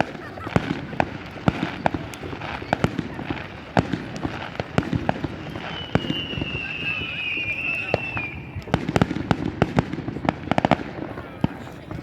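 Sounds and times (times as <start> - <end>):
fireworks bangs and cracks: 0.0 - 12.0.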